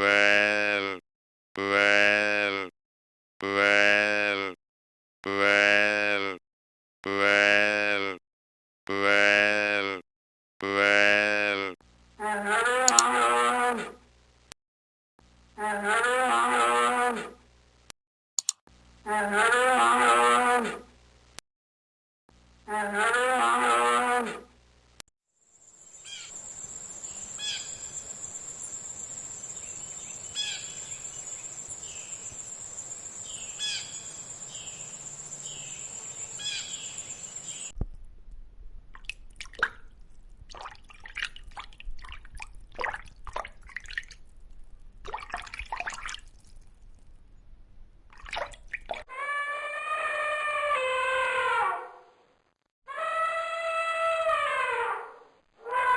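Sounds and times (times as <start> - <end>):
bird chirping: 25.6 - 37.8
pitched animal call: 52.9 - 55.9.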